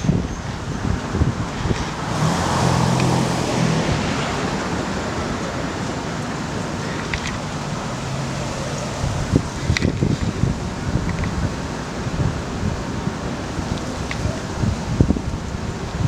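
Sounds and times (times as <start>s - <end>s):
steady traffic hum: 0.0s - 16.0s
vehicle passing: 0.8s - 16.0s.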